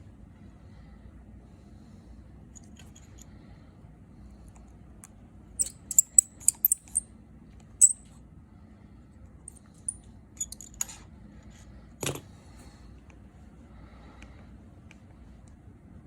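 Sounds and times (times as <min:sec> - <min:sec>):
small metallic clinks: 0:05.6 - 0:07.0.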